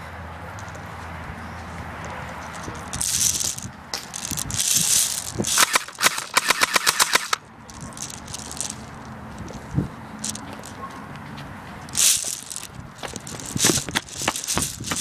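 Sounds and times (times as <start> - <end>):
airsoft gun rapid shots: 5.4 - 7.4.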